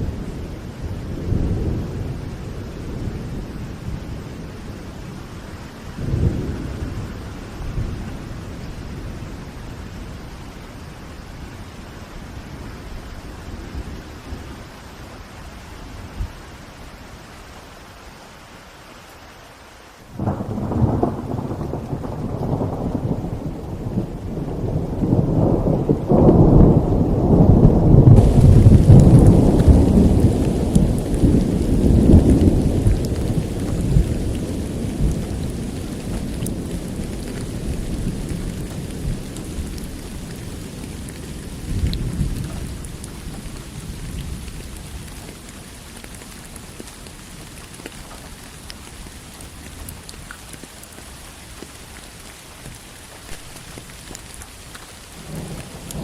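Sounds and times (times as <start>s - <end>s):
bright hiss of rain: 0.0s - 56.0s
rain falling: 0.0s - 56.0s
rolling thunder: 20.2s - 45.5s.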